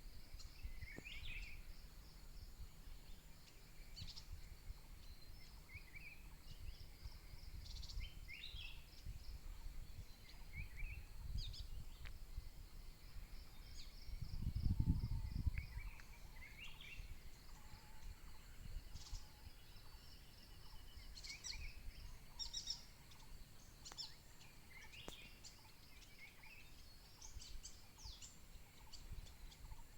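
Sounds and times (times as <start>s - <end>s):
wind rumble on microphone: 0.0s - 23.4s, 24.7s - 29.9s
birds chirping and trilling: 13.0s - 29.9s.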